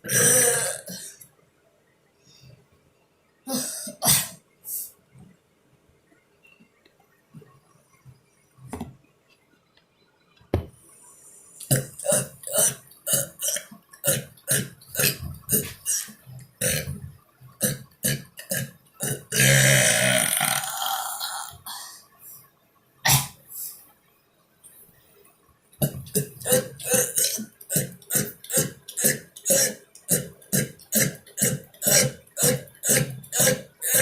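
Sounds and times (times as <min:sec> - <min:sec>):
man burping: 0:00.0 - 0:01.2, 0:11.6 - 0:17.0, 0:17.6 - 0:21.6, 0:25.8 - 0:34.0.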